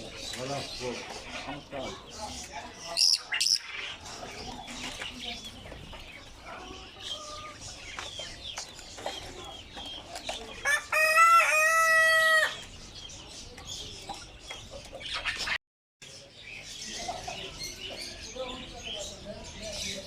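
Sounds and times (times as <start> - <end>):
small birds chirping: 0.0 - 20.0
rooster crowing: 10.6 - 12.6.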